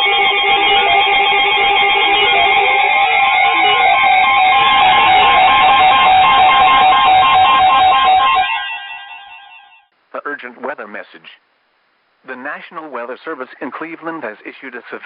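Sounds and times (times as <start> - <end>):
weather alert radio beeps: 0.0 - 9.8
steady alarm tone: 0.0 - 9.9.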